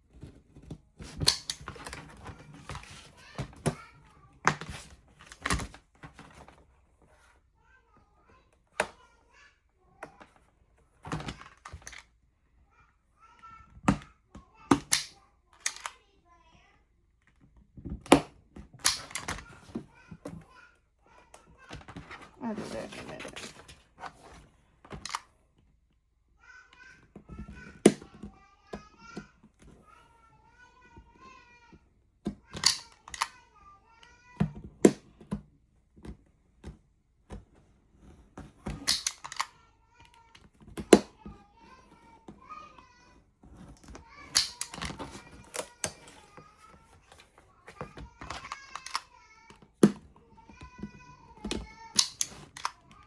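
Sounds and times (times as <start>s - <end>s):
faint child's voice: 2.2s - 4.8s, 7.6s - 10.5s, 12.6s - 16.9s, 19.2s - 23.7s, 26.4s - 34.7s, 38.6s - 43.3s, 43.9s - 53.0s
craft tools clicking and tapping: 13.8s - 16.0s, 17.8s - 20.4s, 32.2s - 33.4s, 38.0s - 53.0s.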